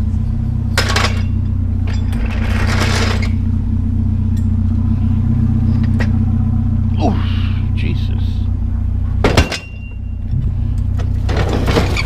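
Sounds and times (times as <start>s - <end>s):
vehicle engine running: 0.0s - 12.0s
scrap metal rattling: 0.8s - 3.6s, 10.9s - 12.0s.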